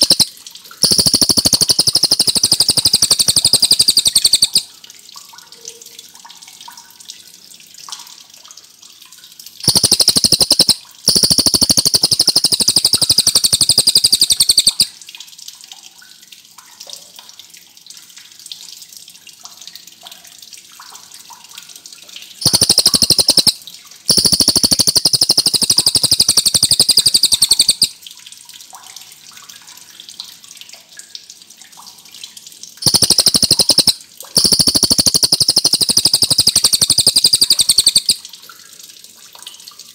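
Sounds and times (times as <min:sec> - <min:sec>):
bird chirping softly: 0:00.0 - 0:04.7, 0:32.8 - 0:38.2.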